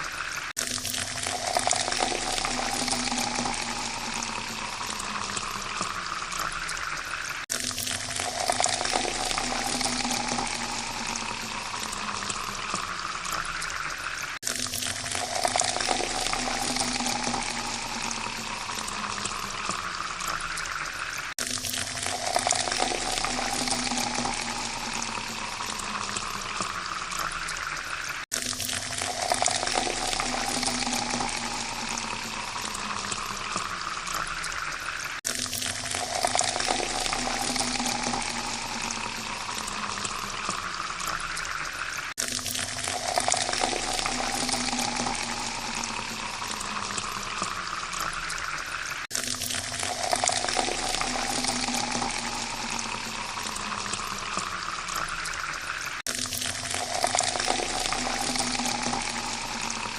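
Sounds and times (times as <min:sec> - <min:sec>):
water pouring into a glass: 0:00.0 - 0:59.9.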